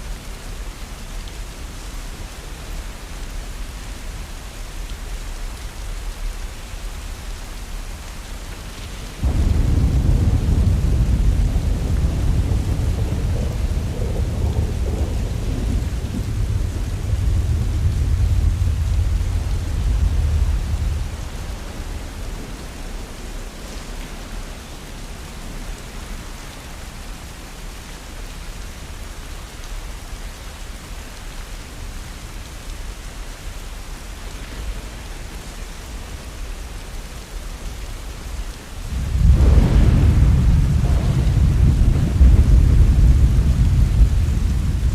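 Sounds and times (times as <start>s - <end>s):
steady rain falling: 0.0s - 44.9s
rolling thunder: 9.2s - 23.4s, 38.8s - 44.9s.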